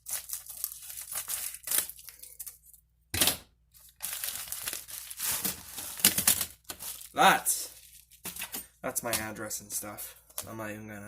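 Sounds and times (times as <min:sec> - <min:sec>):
package being torn open: 0:00.0 - 0:02.8
packaging crinkling: 0:00.0 - 0:02.8, 0:03.8 - 0:08.3.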